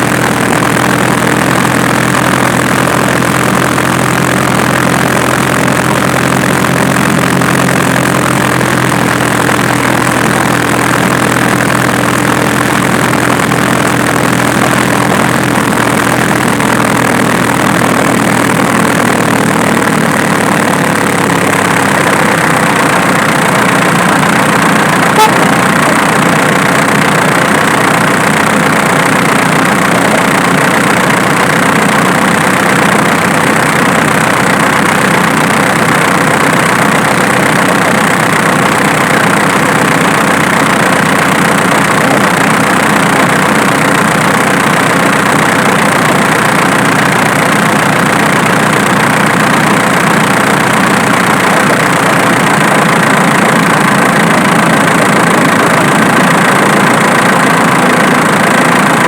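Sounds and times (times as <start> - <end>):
diesel engine idling: 0.0 - 59.0.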